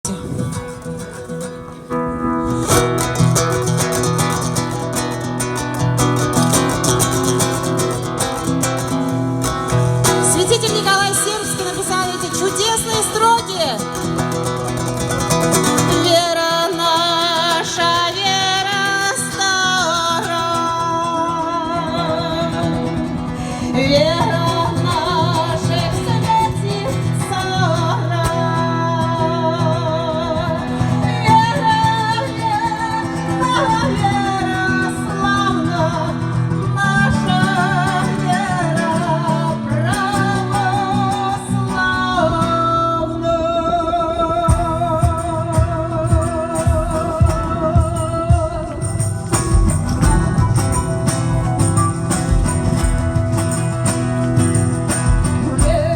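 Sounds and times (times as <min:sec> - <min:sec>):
person singing with vibrato: 0:08.8 - 0:14.6, 0:15.6 - 0:52.4, 0:54.6 - 0:55.9
instrumental accompaniment: 0:44.5 - 0:55.9.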